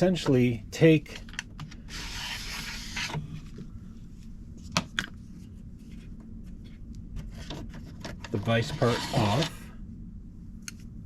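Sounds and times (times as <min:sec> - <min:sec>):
scraping rub: 0:01.9 - 0:03.2, 0:08.4 - 0:09.6.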